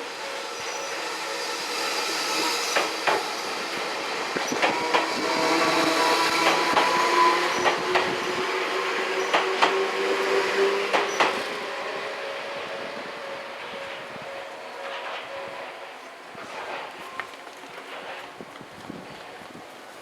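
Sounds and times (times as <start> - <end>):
train whine rising in pitch: 0.0 - 17.4
train wheels clacking: 0.3 - 18.7.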